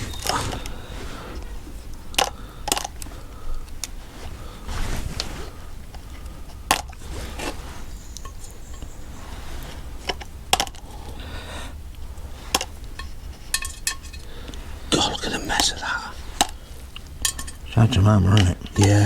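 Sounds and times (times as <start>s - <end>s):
metal engine parts clicking: 12.6s - 14.3s, 17.2s - 17.6s.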